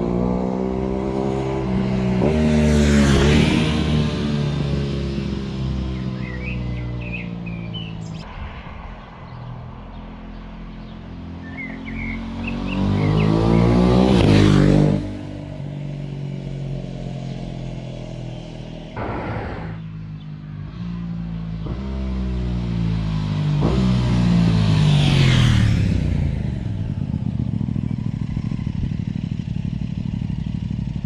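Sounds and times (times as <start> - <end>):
motorcycle accelerating past: 0.0 - 31.0
birds chirping: 5.9 - 8.2, 8.8 - 13.9, 19.0 - 20.8.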